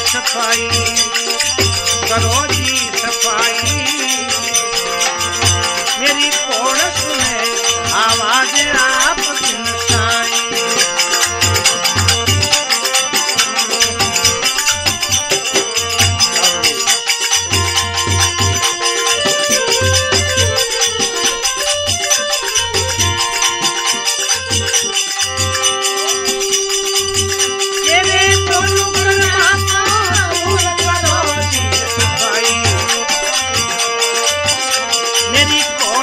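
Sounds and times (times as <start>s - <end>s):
fast percussion ticks: 0.0s - 36.0s
sustained melodic tones: 0.0s - 36.0s
wavering melodic line: 8.9s - 36.0s.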